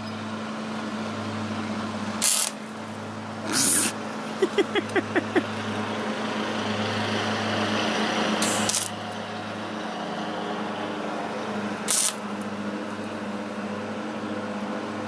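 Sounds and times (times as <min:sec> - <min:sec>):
welding arc crackling hiss: 0:02.2 - 0:02.6, 0:08.4 - 0:08.9, 0:11.9 - 0:12.2.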